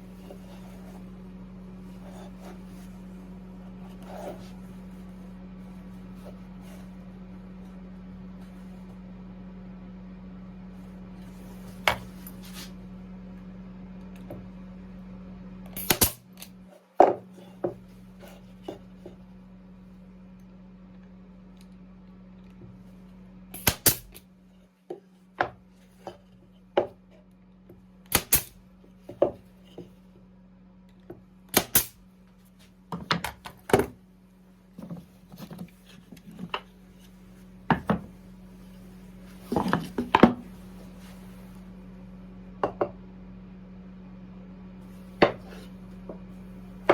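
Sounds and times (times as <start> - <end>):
steady low hum: 0.0 - 46.9
nails hammered into wood: 15.8 - 16.2, 23.6 - 24.1, 28.1 - 28.5, 31.5 - 32.0.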